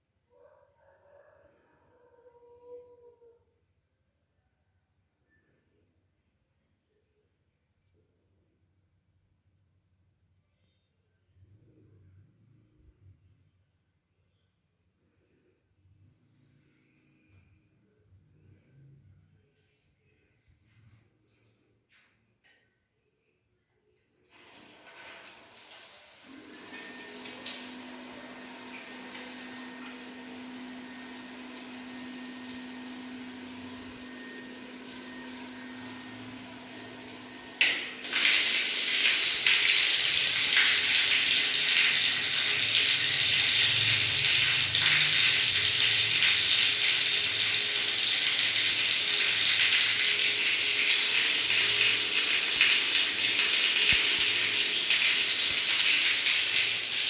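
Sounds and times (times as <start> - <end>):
water running from a tap: 24.3 - 57.0.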